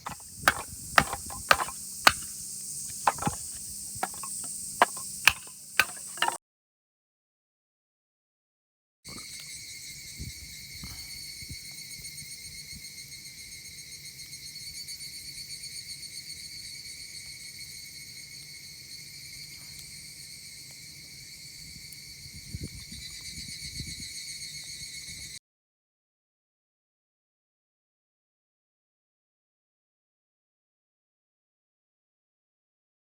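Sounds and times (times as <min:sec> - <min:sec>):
insects chirring: 0:00.0 - 0:06.4, 0:09.1 - 0:25.4.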